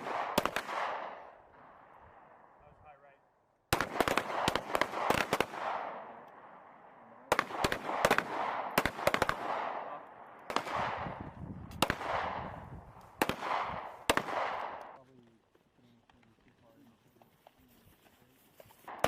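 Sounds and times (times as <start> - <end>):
pistol shots with echo: 0.0 - 2.5, 3.7 - 15.0.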